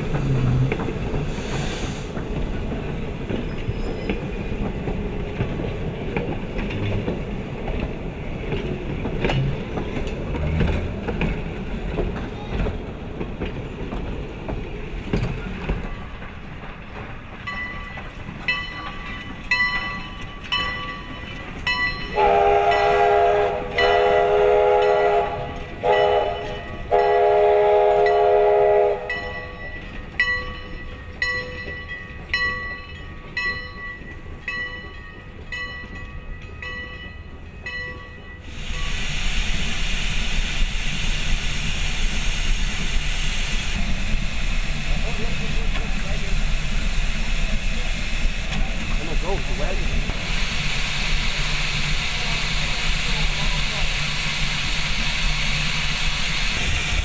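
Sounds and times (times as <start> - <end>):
steam locomotive rumbling: 0.0 - 57.0
locomotive bell ringing: 17.5 - 23.0, 29.0 - 39.0
steam whistle blasts: 22.2 - 29.6.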